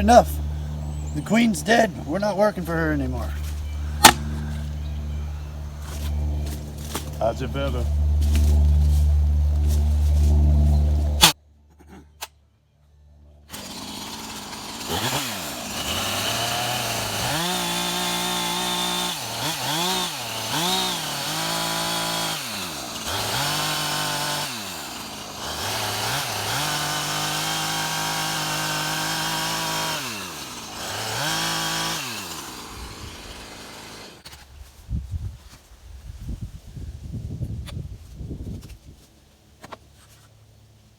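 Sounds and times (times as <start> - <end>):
chainsaw engine revving: 0.0 - 5.1, 13.5 - 34.2.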